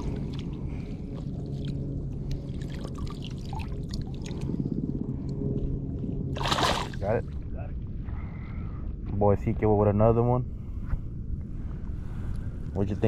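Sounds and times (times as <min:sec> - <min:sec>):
water sloshing and trickling: 0:00.0 - 0:04.6, 0:06.3 - 0:07.4
low rumble: 0:00.0 - 0:13.0
small splashes: 0:06.4 - 0:07.1.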